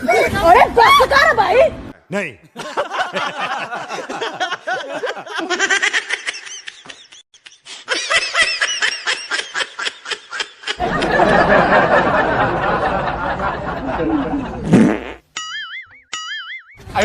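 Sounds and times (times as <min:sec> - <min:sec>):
laughter in rapid bursts: 0:02.6 - 0:14.6
loud fart sound: 0:14.6 - 0:15.3.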